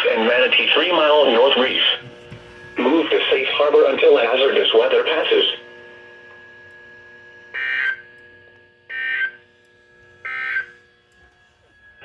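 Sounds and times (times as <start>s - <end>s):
faint radio receiver hum: 0.0s - 8.6s.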